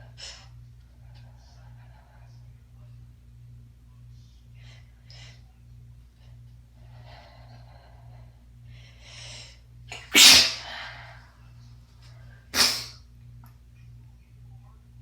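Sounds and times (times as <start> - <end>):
stifled sneezes: 9.9 - 10.8, 12.6 - 13.0.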